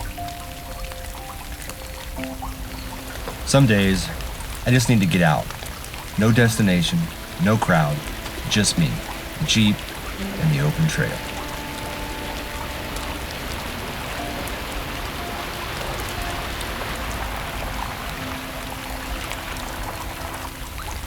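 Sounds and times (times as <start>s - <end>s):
drops ticking: 0.0s - 21.0s
rain on a windshield: 0.0s - 21.0s.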